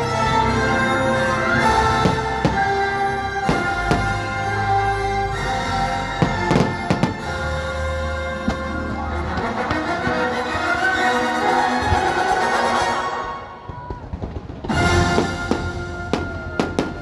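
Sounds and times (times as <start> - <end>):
orchestral music: 0.0 - 13.9, 14.6 - 17.0
firework bangs: 1.8 - 5.3, 6.2 - 10.3, 13.6 - 17.0.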